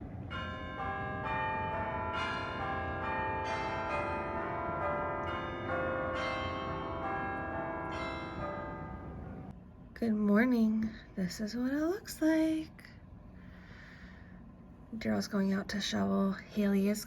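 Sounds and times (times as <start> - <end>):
bell notes ringing: 0.3 - 9.5.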